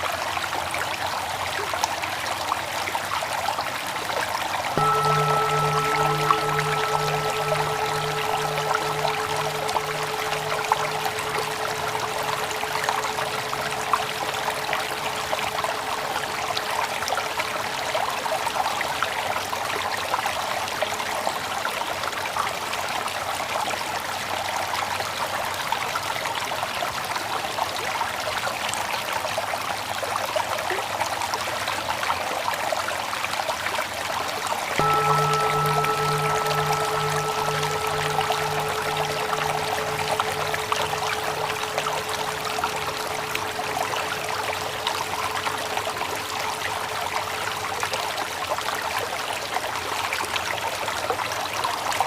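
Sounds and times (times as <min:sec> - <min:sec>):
mindfulness bell ringing: 0:04.7 - 0:18.3, 0:34.8 - 0:48.9
running water: 0:04.8 - 0:17.8, 0:34.8 - 0:48.8.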